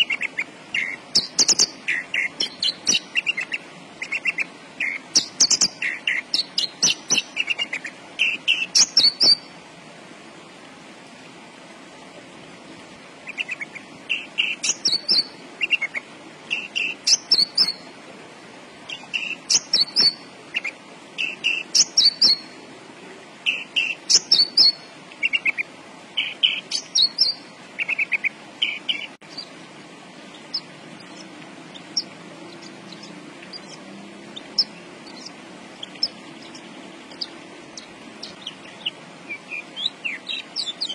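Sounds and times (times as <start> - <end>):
lark singing chirping notes: 0.0 - 9.5, 13.3 - 17.9, 18.9 - 22.6, 23.4 - 29.6, 30.2 - 40.9.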